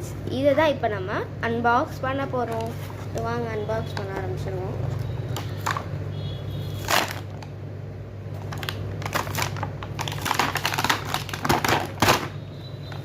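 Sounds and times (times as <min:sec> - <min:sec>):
packaging crinkling and clicking: 0:05.3 - 0:05.9, 0:06.8 - 0:07.6, 0:08.3 - 0:12.4.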